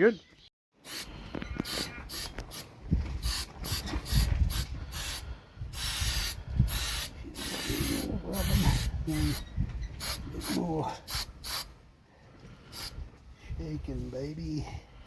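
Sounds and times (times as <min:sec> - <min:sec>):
spray-paint can hissing: 0:00.8 - 0:05.2, 0:05.8 - 0:09.4, 0:10.0 - 0:11.7, 0:12.8 - 0:13.0.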